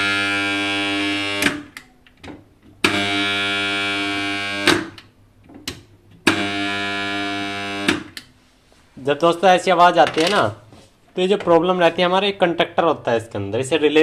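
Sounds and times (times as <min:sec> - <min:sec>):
contactor buzzing: 0:00.0 - 0:01.8, 0:02.8 - 0:05.0, 0:06.2 - 0:08.2.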